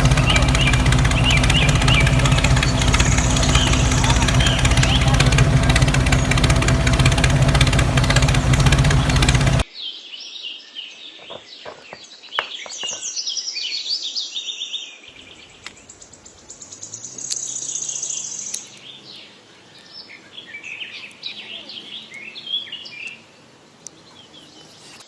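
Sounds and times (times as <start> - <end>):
small engine running: 0.0 - 9.6, 15.1 - 19.0
birds chirping and trilling: 0.0 - 25.0.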